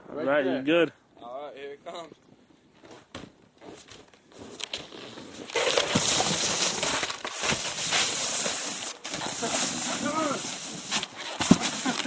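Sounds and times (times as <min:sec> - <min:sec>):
snowboard scraping on snow: 0:05.1 - 0:12.0.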